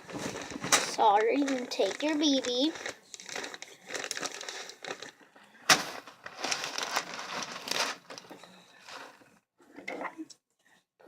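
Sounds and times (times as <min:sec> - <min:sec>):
rustling small objects: 0:00.0 - 0:09.3.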